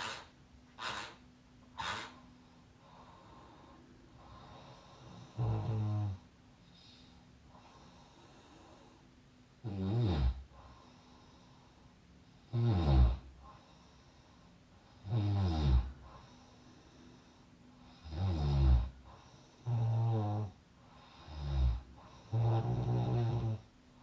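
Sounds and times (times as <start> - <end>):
breathy puff: 0.0 - 2.4
faint breathing: 0.0 - 9.3, 10.3 - 12.6, 13.2 - 15.1, 15.8 - 18.2, 18.8 - 24.0
person snoring: 3.0 - 6.2, 9.6 - 10.5, 12.5 - 13.5, 14.9 - 16.3, 17.8 - 23.7.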